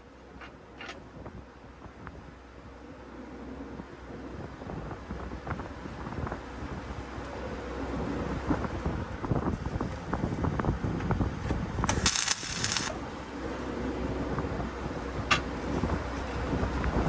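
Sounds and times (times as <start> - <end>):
steady low hum: 11.8 - 16.4
loud hissing crackling burst: 11.9 - 12.9
steel parts clanking: 11.9 - 12.9.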